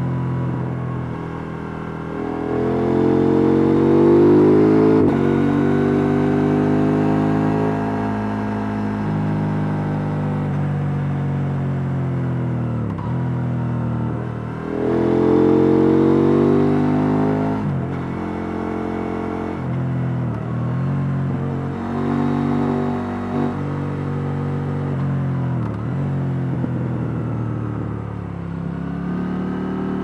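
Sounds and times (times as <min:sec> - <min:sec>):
motorcycle engine revving: 0:01.7 - 0:10.4, 0:14.1 - 0:19.6.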